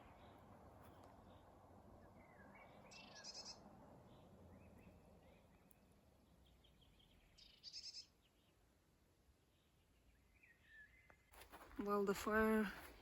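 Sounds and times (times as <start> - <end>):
trilled bird calls: 0.0 - 8.6
faint bird chirps: 0.0 - 8.8, 9.4 - 11.3.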